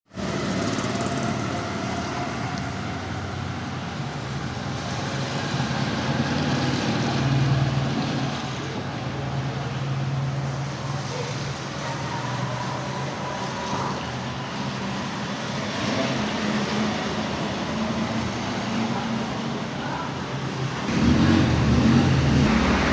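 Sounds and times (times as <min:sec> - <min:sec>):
traffic noise: 0:00.1 - 0:22.9
motorcycle engine running: 0:20.9 - 0:22.9.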